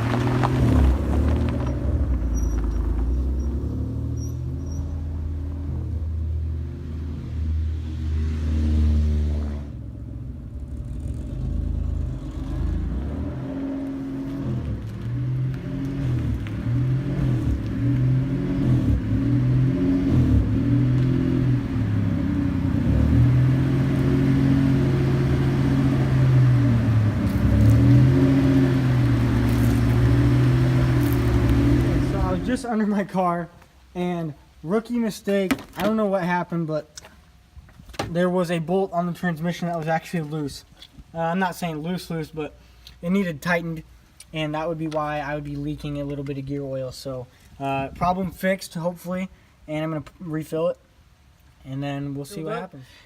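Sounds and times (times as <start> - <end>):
car engine and exhaust while driving: 0.0 - 32.7.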